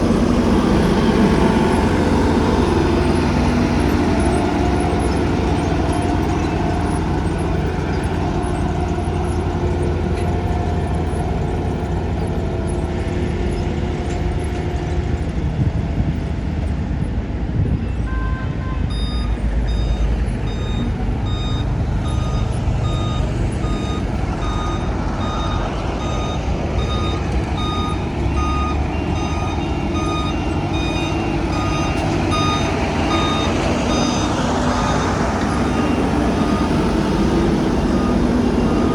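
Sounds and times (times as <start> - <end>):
heavy vehicle engine running: 0.0 - 38.9
reversing alarm beeps: 18.1 - 38.9.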